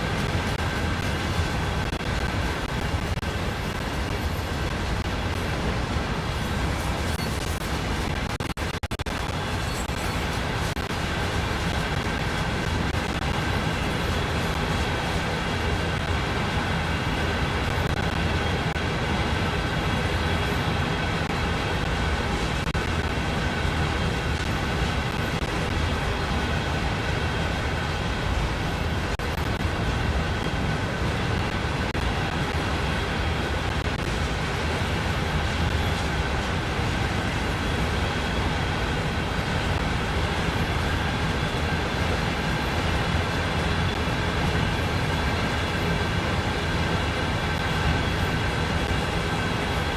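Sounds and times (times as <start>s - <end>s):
freight train rumble: 0.0s - 49.9s.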